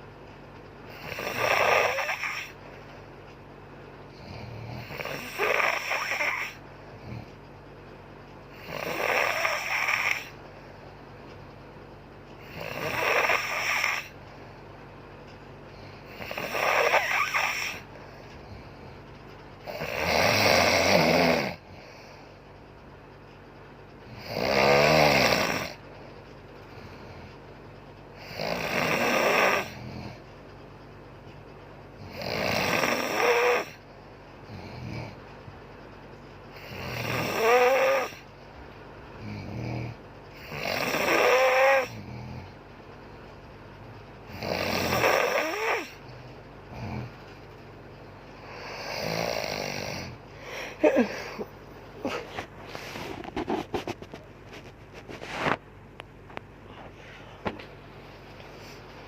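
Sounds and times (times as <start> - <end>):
woman snoring: 0.9 - 2.6, 4.1 - 6.6, 8.6 - 10.4, 12.4 - 14.2, 16.0 - 17.9, 19.6 - 22.0, 24.1 - 25.8, 28.2 - 30.2, 32.0 - 33.8, 36.5 - 38.3, 39.2 - 42.6, 44.3 - 46.1, 48.4 - 53.6.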